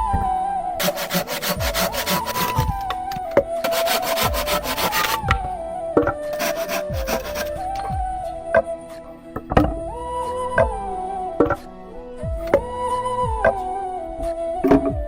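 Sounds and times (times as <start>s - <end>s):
hand saw cutting wood: 0.8s - 3.0s, 3.6s - 5.4s, 6.3s - 7.9s.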